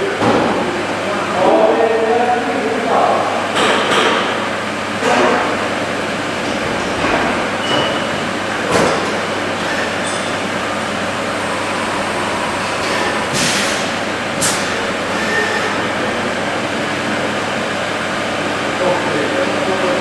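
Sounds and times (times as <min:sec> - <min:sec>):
valve grinding machine grinding: 0:09.1 - 0:15.8.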